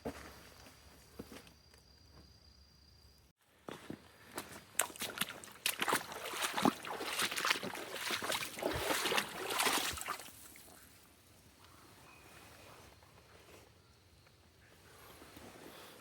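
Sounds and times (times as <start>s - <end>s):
footsteps crunching on rough ground: 0.0s - 2.4s, 3.6s - 10.4s.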